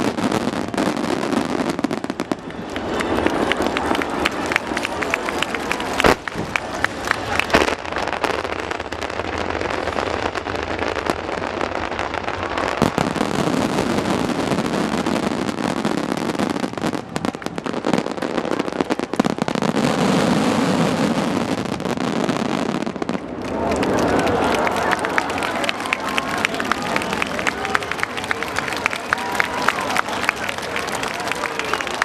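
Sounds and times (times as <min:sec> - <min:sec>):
fireworks bursting and crackling: 0:00.0 - 0:32.0
sharp firework bangs: 0:06.0 - 0:06.8, 0:07.4 - 0:23.2.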